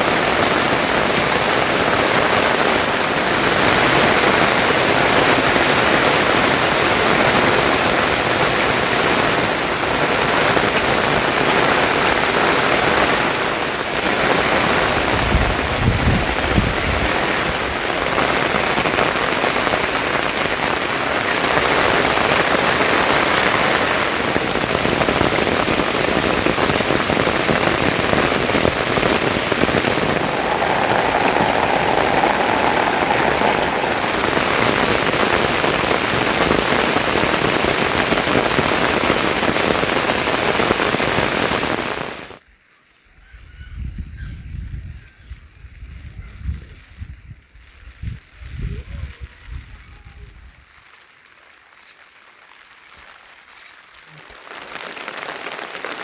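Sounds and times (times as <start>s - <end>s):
steady rain falling: 0.0s - 42.4s, 47.4s - 56.0s
low rumble: 28.6s - 36.8s.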